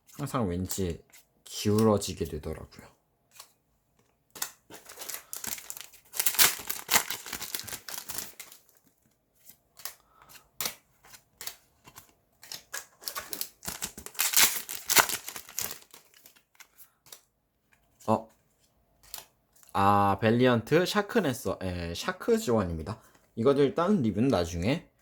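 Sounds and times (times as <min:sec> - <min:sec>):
cards being handled: 0:03.3 - 0:19.7
foil wrappers crinkling and tearing: 0:04.4 - 0:08.8, 0:12.4 - 0:17.2.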